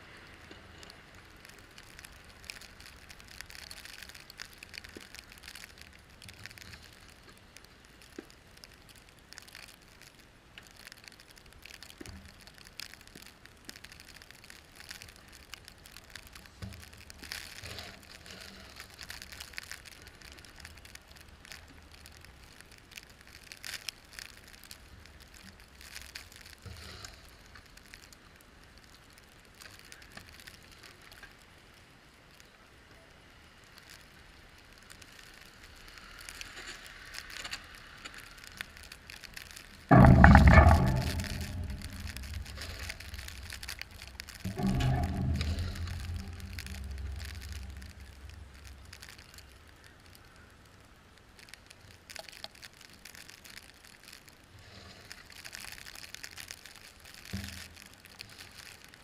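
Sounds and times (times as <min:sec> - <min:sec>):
low rumble: 0:39.9 - 0:49.7.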